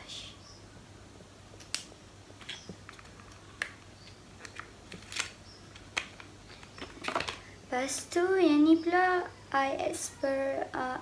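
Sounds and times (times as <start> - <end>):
plastic packaging clicks: 1.6 - 7.4.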